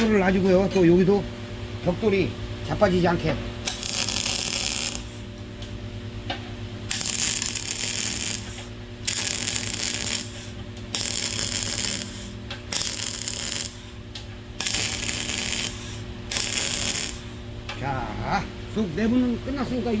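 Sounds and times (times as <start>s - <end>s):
machine humming: 0.0s - 20.0s.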